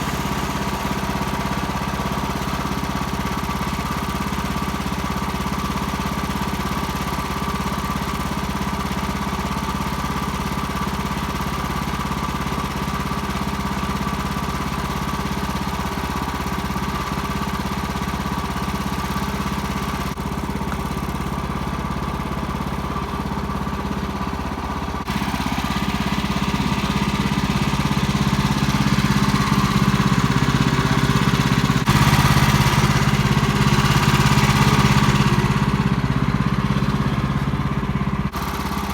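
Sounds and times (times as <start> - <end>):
sawmill engine cutting log: 0.0 - 38.9.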